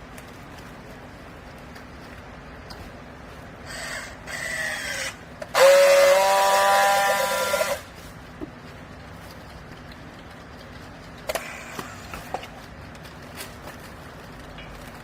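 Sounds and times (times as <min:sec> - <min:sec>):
hydraulic pump whining: 0:03.6 - 0:07.9.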